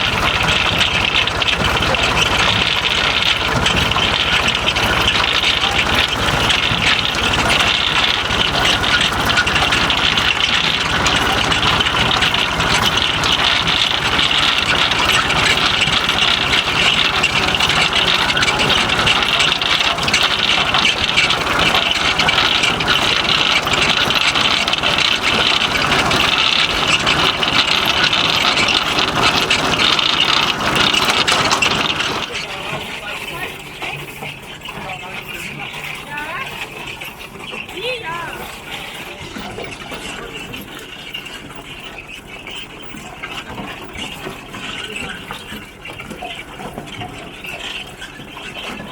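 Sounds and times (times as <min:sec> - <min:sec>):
potato harvester clattering: 0:00.0 - 0:48.9
tractor engine running: 0:00.0 - 0:48.9.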